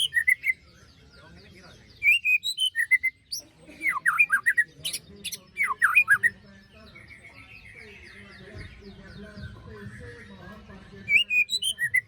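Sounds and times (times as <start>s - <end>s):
bird whistling song: 0.0s - 0.6s, 1.9s - 8.4s, 11.0s - 12.0s
harsh rasping bird calls: 0.0s - 12.0s.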